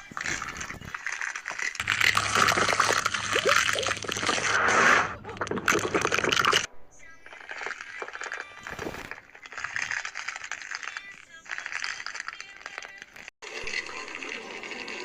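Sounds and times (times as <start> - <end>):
water splashing and sloshing: 0.0 - 10.0.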